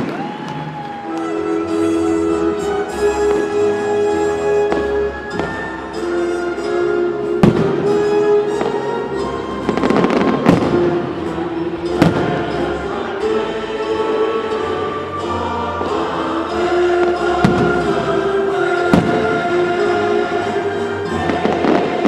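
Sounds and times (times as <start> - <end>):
fireworks crackling: 0.0 - 6.7, 7.4 - 12.8, 17.0 - 22.0
loud background music: 0.0 - 22.0
fireworks bangs: 7.4 - 9.0, 9.6 - 11.1, 12.0 - 12.4, 17.4 - 19.6.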